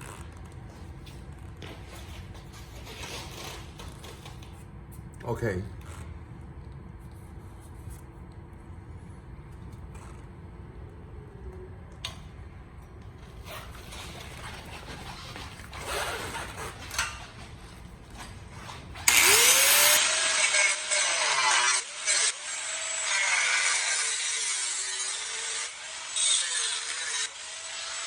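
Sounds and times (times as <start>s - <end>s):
scraping and handling noise: 12.9s - 20.0s
power tool cutting steel pipe: 19.0s - 28.0s.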